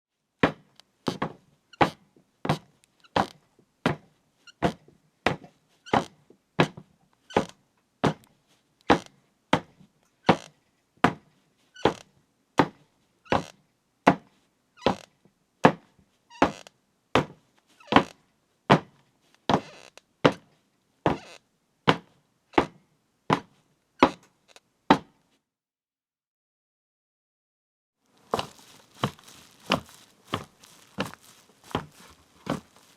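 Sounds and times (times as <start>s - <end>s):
footsteps knocking: 28.2s - 32.9s.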